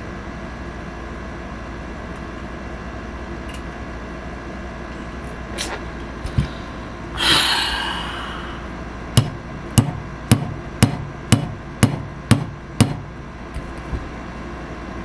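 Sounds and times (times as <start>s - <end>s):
hammer tapping metal: 9.2s - 13.0s.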